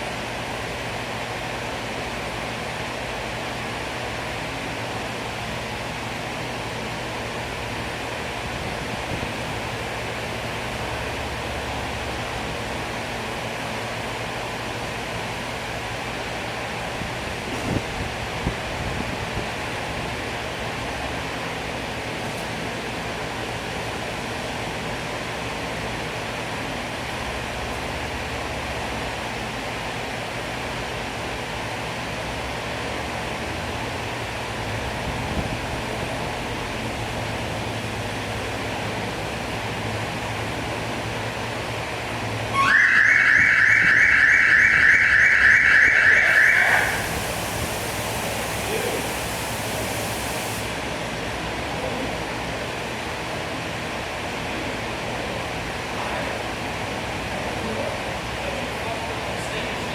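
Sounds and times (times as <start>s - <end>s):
car alarm siren warbling: 42.5s - 47.2s
steady background hiss: 46.2s - 51.2s.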